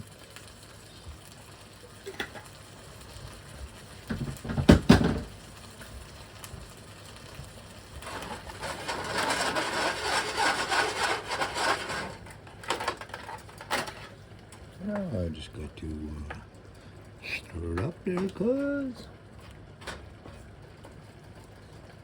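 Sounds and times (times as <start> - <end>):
loud knocks: 4.2 - 5.3
utensil scraping food in a pan: 7.9 - 14.2.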